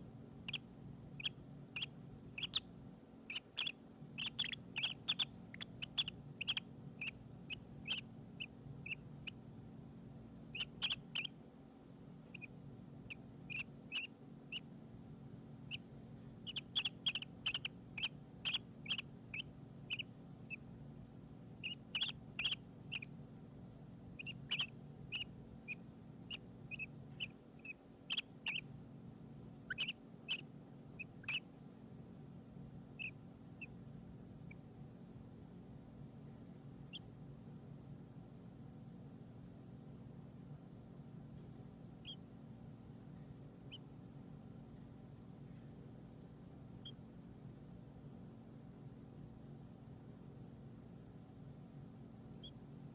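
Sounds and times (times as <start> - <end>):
steady low hum: 0.0 - 52.9
baby birds peeping: 0.4 - 2.7, 3.3 - 9.4, 10.5 - 11.4, 12.3 - 14.7, 15.6 - 20.6, 21.6 - 23.1, 24.2 - 28.7, 29.7 - 30.4, 31.0 - 31.5, 33.0 - 33.8, 42.0 - 42.2.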